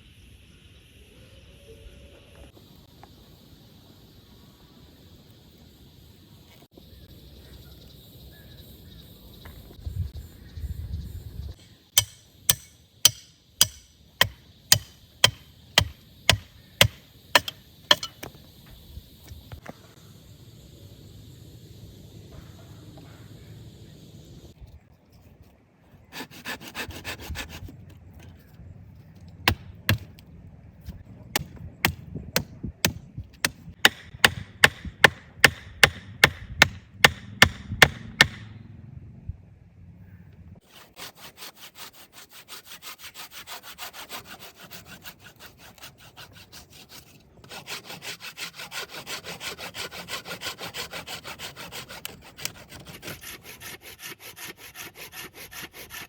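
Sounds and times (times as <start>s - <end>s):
hand saw cutting wood: 12.0s - 18.1s, 26.1s - 27.8s, 40.6s - 56.0s.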